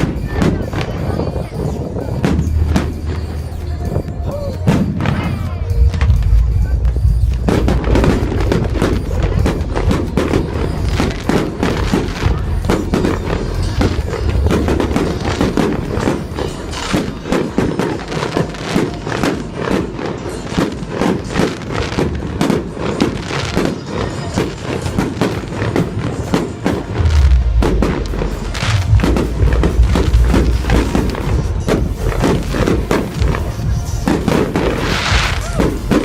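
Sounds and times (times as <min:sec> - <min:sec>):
heavy low rumble: 0:00.0 - 0:17.4, 0:26.0 - 0:36.0
fireworks bangs and crackles: 0:00.0 - 0:36.0
music playing: 0:00.0 - 0:36.0.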